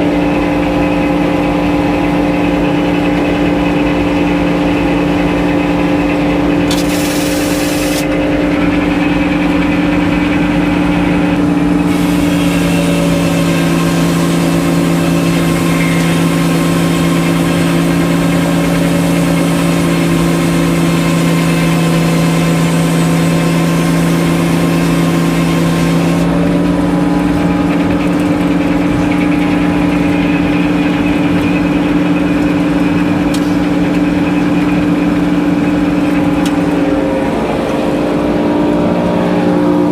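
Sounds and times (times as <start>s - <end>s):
sawmill engine running: 0.0s - 39.9s
hissing noise: 6.7s - 8.1s.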